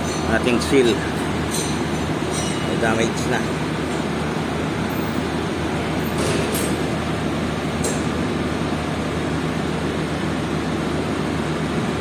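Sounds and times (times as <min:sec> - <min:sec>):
metallic clinks of steel parts: 0:00.0 - 0:03.3
low machine hum: 0:00.0 - 0:12.0.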